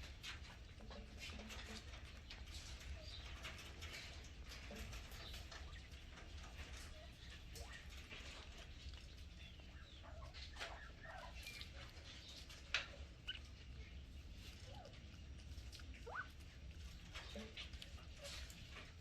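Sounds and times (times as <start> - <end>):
birds pecking at food: 0.0 - 19.0
soft short bird calls: 16.0 - 16.4.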